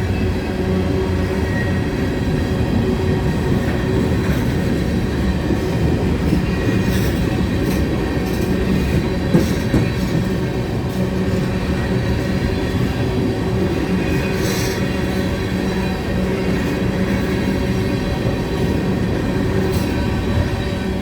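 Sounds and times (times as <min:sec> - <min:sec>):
train wheels rumbling on rail: 0:00.0 - 0:21.0.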